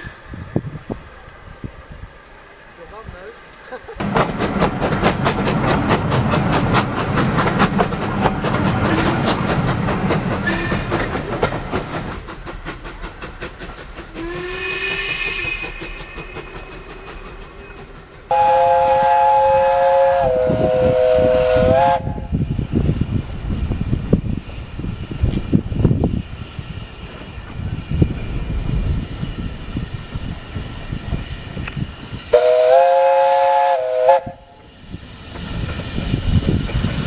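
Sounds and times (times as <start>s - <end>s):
steam hiss: 0.0s - 37.0s
steam locomotive chuffing: 0.0s - 37.0s
steam whistle: 10.4s - 11.0s, 14.2s - 16.6s, 18.3s - 22.4s, 32.3s - 34.8s.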